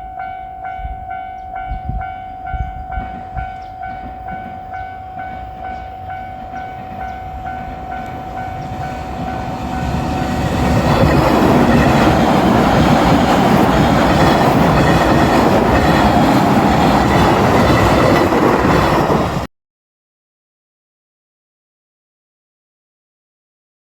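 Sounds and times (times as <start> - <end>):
level crossing bell clanging: 0.0 - 10.1
train rolling past: 0.0 - 19.5.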